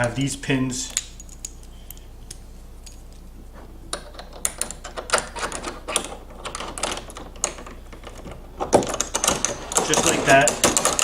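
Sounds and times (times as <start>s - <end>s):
metal hardware clicking and rattling: 3.9s - 11.0s.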